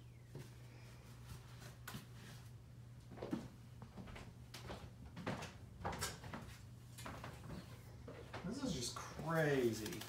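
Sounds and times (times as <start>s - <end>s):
packaging rustling: 8.7s - 10.0s.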